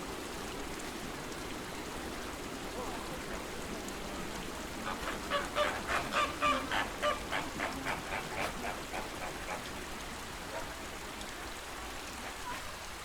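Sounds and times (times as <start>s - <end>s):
lake water washing: 0.0s - 13.0s
flamingos honking: 4.7s - 10.0s.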